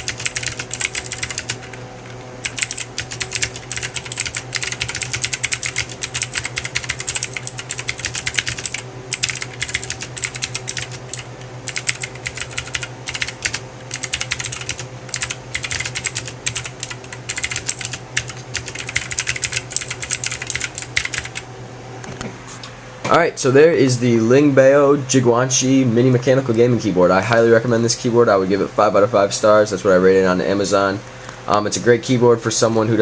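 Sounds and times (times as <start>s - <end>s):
mechanical keyboard typing: 0.0s - 1.8s, 2.4s - 21.4s
steady low hum: 0.0s - 33.0s.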